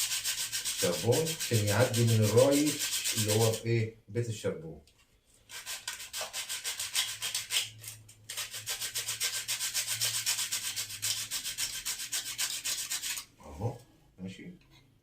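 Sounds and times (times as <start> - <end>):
carbon brush rubbing on sandpaper: 0.0 - 3.7, 5.5 - 7.7, 8.3 - 13.3.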